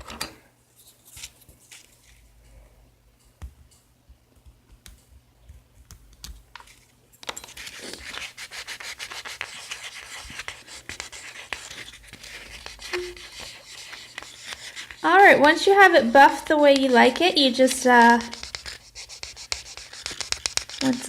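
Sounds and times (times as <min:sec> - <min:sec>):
nail buffer rubbing: 0:07.5 - 0:15.8, 0:17.9 - 0:21.0.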